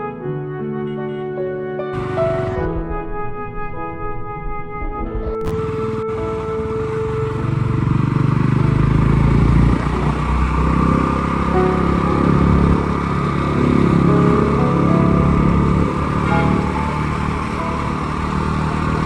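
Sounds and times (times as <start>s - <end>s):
motorcycle engine running: 2.0s - 2.6s, 5.5s - 19.0s.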